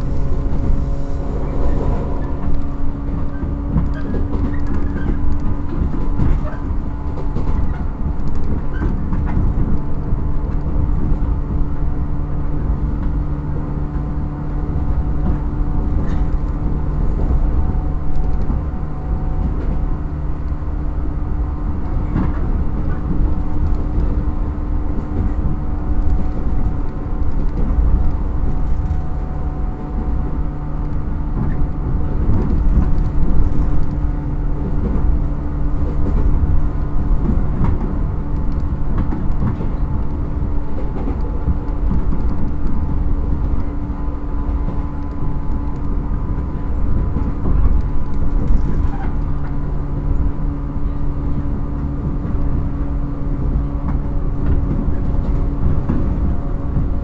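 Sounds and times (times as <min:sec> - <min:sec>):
traction motor hum: 0:00.0 - 0:06.3
train wheels rumbling on rail: 0:00.0 - 0:57.0
sharp clicks from track: 0:37.2 - 0:43.8.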